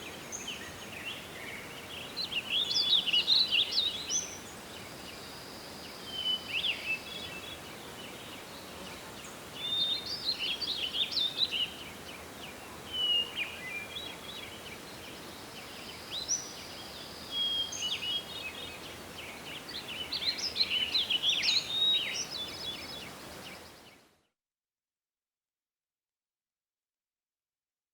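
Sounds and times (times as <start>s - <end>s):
soft wind hiss: 0.0s - 24.1s
songbirds singing: 0.0s - 24.1s.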